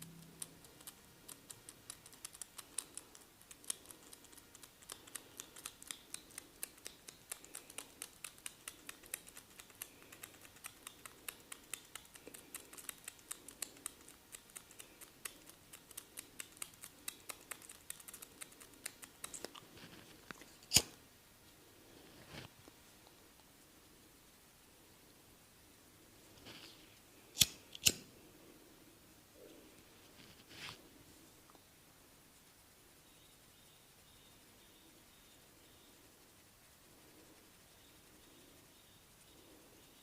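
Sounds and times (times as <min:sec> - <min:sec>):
rapid crisp clicks: 0:00.0 - 0:19.6.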